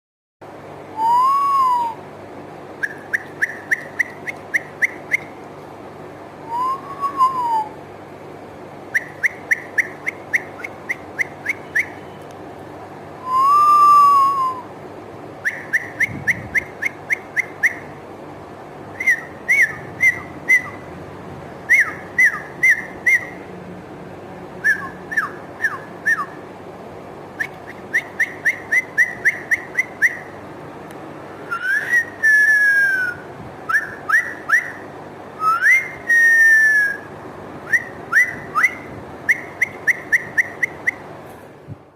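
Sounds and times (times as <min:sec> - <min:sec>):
long rising and falling whistles: 0:01.0 - 0:02.0, 0:02.8 - 0:05.3, 0:06.4 - 0:07.7, 0:08.9 - 0:12.1, 0:13.2 - 0:14.7, 0:15.4 - 0:17.9, 0:19.0 - 0:20.8, 0:21.7 - 0:23.4, 0:24.6 - 0:26.3, 0:27.4 - 0:30.3, 0:31.5 - 0:34.8, 0:35.4 - 0:41.0
short whistle chirps: 0:01.0 - 0:02.0, 0:02.8 - 0:05.3, 0:06.5 - 0:07.7, 0:09.0 - 0:12.2, 0:13.2 - 0:14.6, 0:15.4 - 0:17.8, 0:31.5 - 0:34.8, 0:35.4 - 0:37.0, 0:37.7 - 0:41.0.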